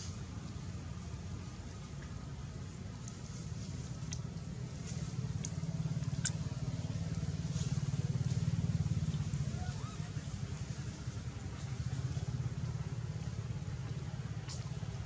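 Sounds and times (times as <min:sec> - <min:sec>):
low engine rumble: 0:00.0 - 0:15.0
faint clicks: 0:04.0 - 0:07.3.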